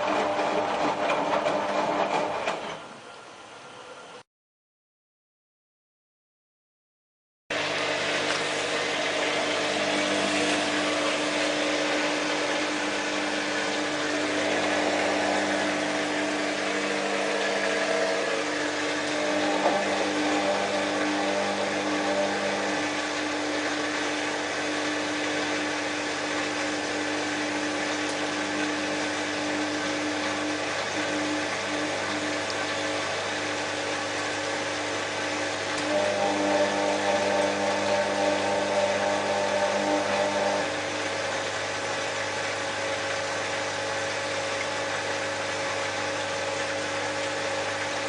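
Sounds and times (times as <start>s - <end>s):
washing machine running: 0.0s - 4.2s, 7.5s - 48.0s.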